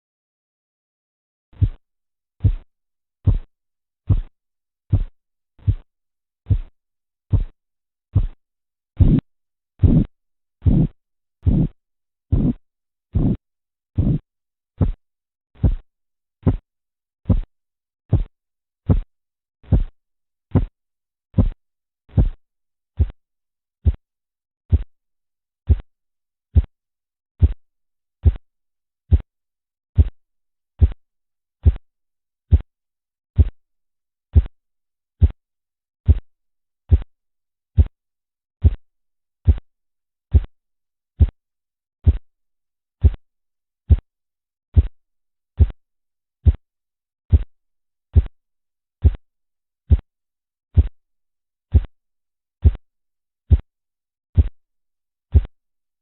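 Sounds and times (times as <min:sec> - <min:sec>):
low pulse thumps: 0:03.3 - 0:03.5, 0:08.2 - 0:08.4, 0:09.0 - 0:09.2, 0:09.8 - 0:12.6, 0:13.2 - 0:13.4, 0:14.0 - 0:14.2.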